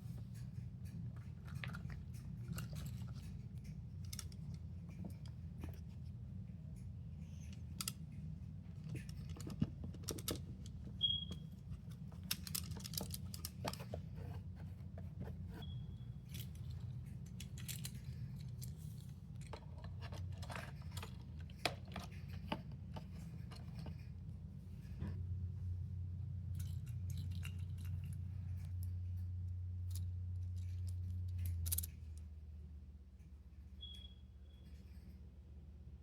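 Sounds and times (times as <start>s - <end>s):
plastic toys clicking and tapping: 0.4s - 5.8s, 7.3s - 14.2s, 29.9s - 32.2s
brief high squeaks: 33.8s - 34.8s.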